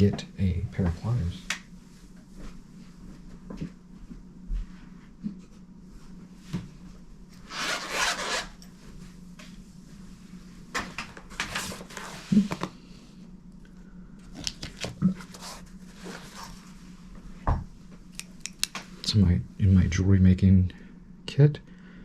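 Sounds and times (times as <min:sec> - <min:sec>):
rustling and scraping: 0:11.3 - 0:12.7, 0:14.5 - 0:17.2.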